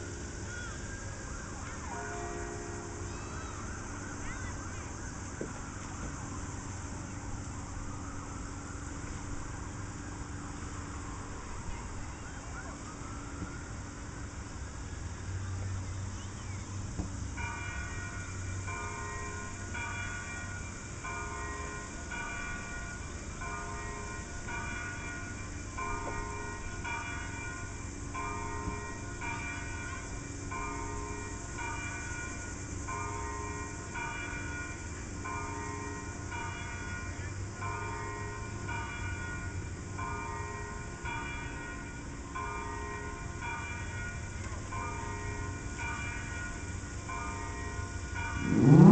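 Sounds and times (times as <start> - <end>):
bells ringing: 1.7 - 6.6, 17.3 - 48.9.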